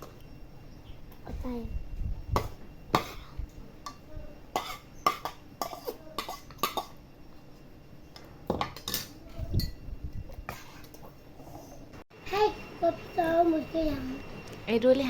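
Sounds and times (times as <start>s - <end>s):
cutlery clinking against dishes: 2.4s - 7.0s, 8.5s - 9.8s.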